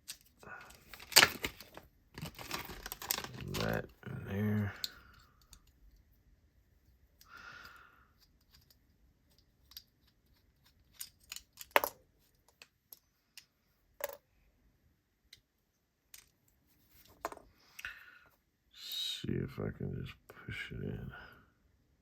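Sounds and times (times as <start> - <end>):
small hard parts clicking: 4.8 - 6.0, 7.2 - 14.2.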